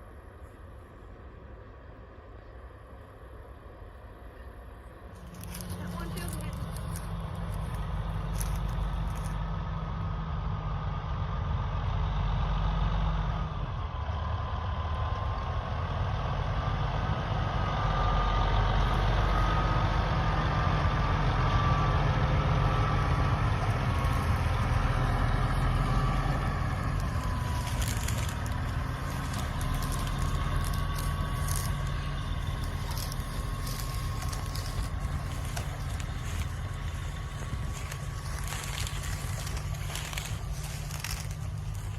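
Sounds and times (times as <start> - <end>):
heavy vehicle engine rumbling: 0.0 - 41.9.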